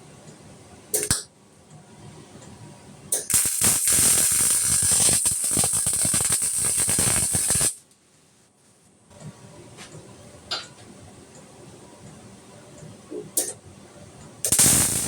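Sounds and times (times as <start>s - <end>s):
welding arc crackling: 3.2s - 7.8s, 14.5s - 15.0s.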